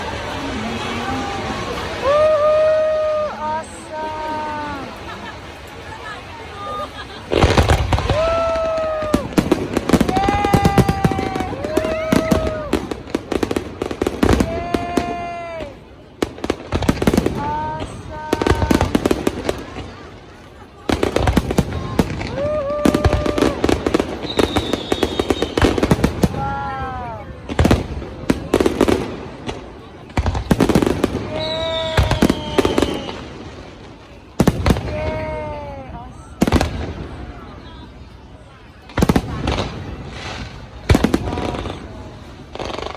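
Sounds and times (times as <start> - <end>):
fireworks crackling and popping: 0.0 - 42.9
firework whistling tones: 21.0 - 26.5, 30.2 - 35.3.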